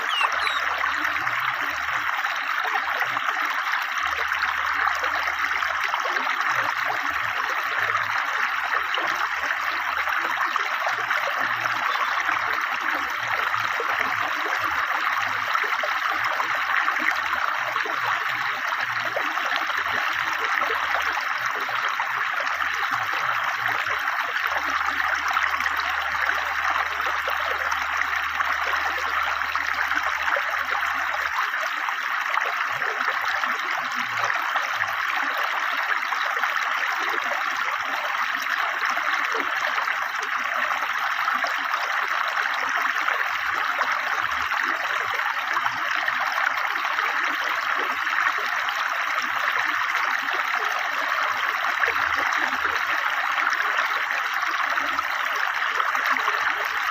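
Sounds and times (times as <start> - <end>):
stream rushing and gurgling: 0.0 - 0.8.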